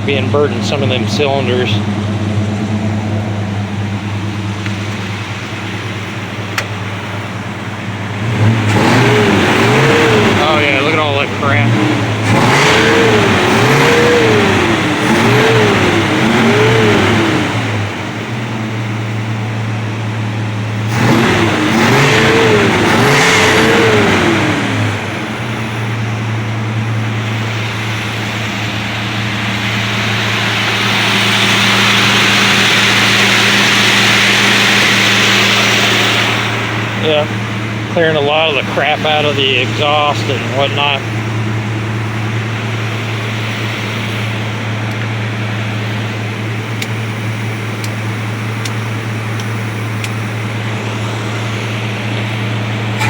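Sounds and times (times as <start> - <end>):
car engine revving: 0.0 - 53.0
engine idling: 0.0 - 53.0
rushing noise: 25.3 - 46.6.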